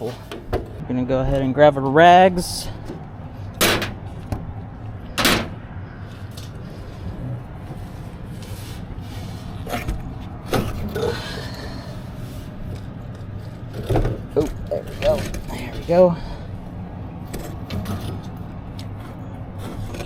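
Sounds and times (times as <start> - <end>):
low mechanical hum: 0.0 - 20.0
metal knocks and clanks: 2.8 - 4.5, 5.1 - 5.6.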